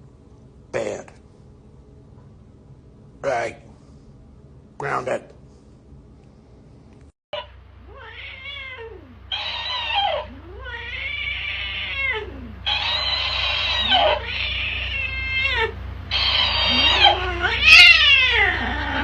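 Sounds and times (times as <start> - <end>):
cat yowling: 7.4 - 19.0.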